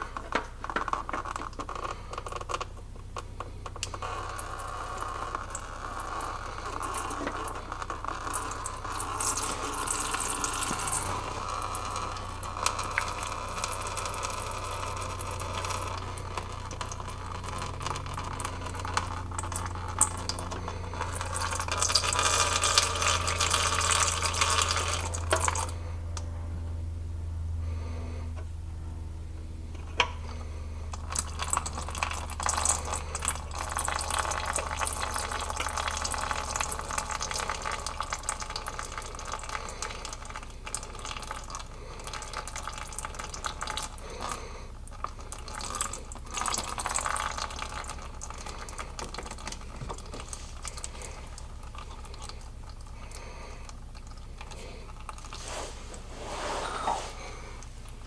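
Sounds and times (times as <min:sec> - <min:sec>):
oil pouring into container: 0:00.0 - 0:25.9, 0:29.9 - 0:56.3.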